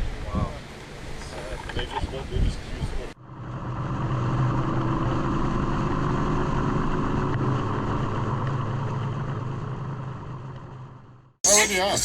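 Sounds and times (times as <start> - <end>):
vehicle engine running: 2.7 - 12.0.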